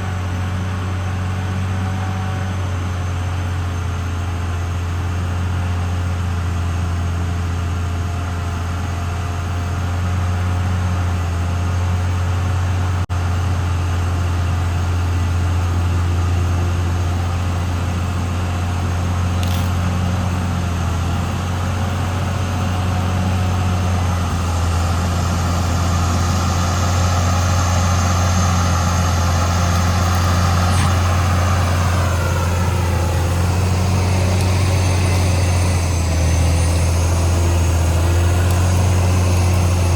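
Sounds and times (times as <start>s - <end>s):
bulldozer diesel engine drone: 0.0s - 39.9s
high whine: 19.1s - 39.9s.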